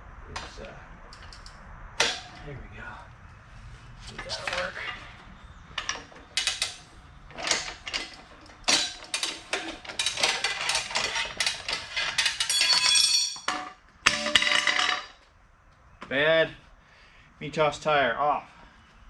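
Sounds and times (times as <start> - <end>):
metal clanking and scraping: 0.4 - 2.6, 3.9 - 15.2
metallic ringing: 5.8 - 15.2.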